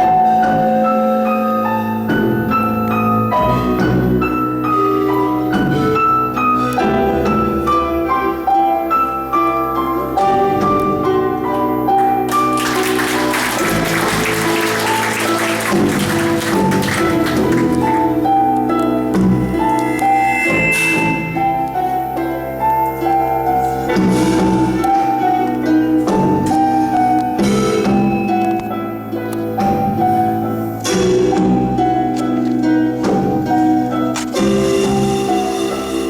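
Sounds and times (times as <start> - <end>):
shimmering hissing percussion: 19.3 - 26.4, 34.4 - 36.0.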